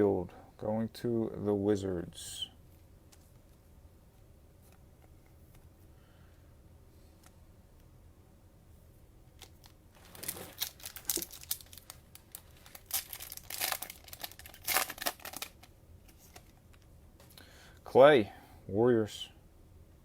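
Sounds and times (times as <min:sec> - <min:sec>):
cellophane wrapper crinkling: 0:09.3 - 0:16.9.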